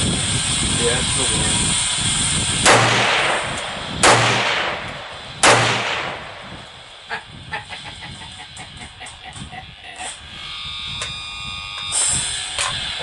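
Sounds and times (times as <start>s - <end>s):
rifle shots echoing: 2.6s - 6.5s.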